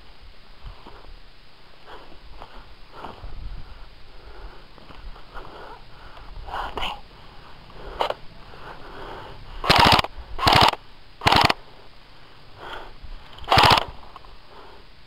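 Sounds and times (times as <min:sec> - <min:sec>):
airsoft gun bursts: 0:09.6 - 0:11.6, 0:13.4 - 0:14.0.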